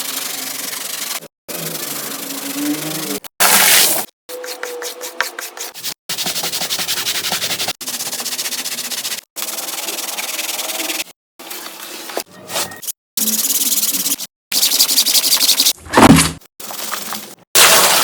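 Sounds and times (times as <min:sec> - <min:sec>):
scrubbing carpet: 0:01.9 - 0:05.2.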